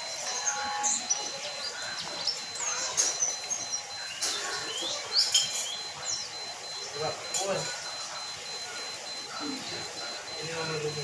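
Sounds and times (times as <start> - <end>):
small bird chirping and singing: 0.0 - 7.2.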